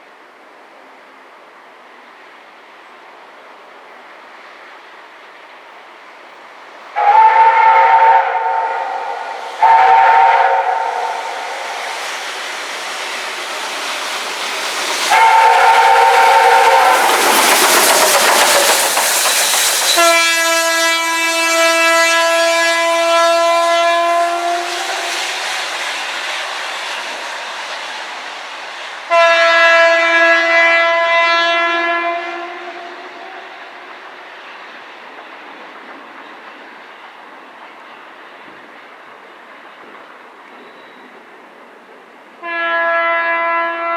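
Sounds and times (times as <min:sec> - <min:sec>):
train rumble and clickety-clack: 0:00.0 - 0:43.9
loud steam hiss: 0:00.7 - 0:42.4
loud train horn: 0:07.0 - 0:11.8, 0:15.1 - 0:17.4, 0:19.9 - 0:25.3, 0:29.1 - 0:33.8, 0:42.4 - 0:43.9
steam whistle blasts: 0:07.0 - 0:12.0, 0:15.0 - 0:18.9, 0:19.6 - 0:25.8, 0:29.1 - 0:33.8, 0:42.4 - 0:43.9.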